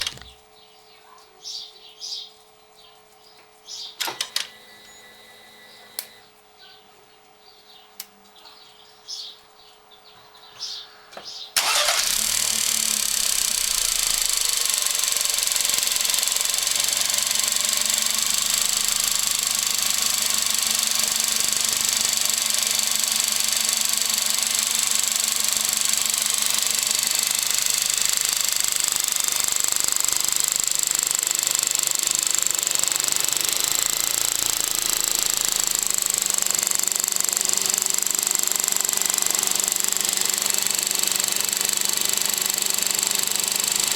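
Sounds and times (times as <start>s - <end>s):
metallic timing chain rattle: 12.7s - 43.9s.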